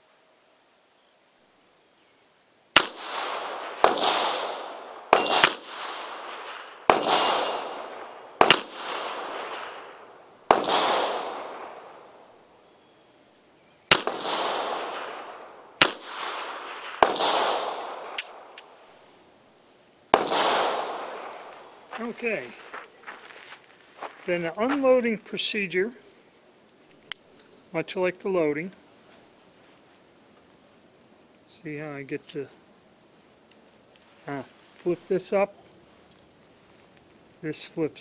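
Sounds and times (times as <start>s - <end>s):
revolver shots with echo: 2.8s - 12.0s, 13.9s - 18.6s, 20.2s - 21.3s.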